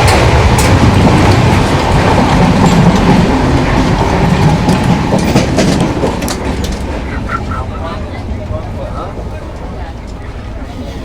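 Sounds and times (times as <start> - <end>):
train carriage rumble and rattle: 0.0 - 11.0
sharp clicks from wheels: 3.8 - 7.6.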